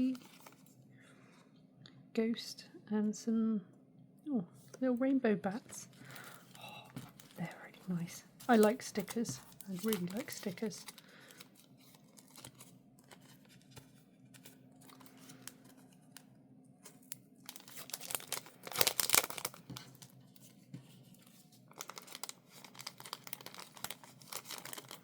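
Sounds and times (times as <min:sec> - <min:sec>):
packaging crinkling: 0:00.0 - 0:00.7, 0:05.8 - 0:16.2, 0:16.8 - 0:25.0.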